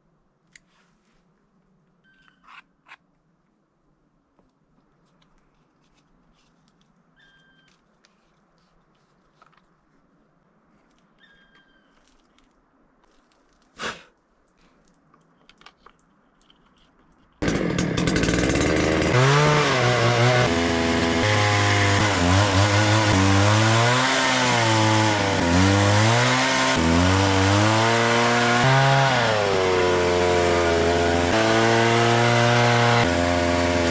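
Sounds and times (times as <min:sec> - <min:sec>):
chainsaw engine revving: 0:17.4 - 0:33.9.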